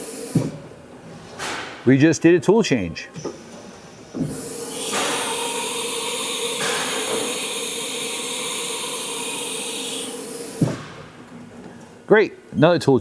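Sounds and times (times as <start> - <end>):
milling machine hiss and hum: 0.0 - 0.8, 3.2 - 11.3.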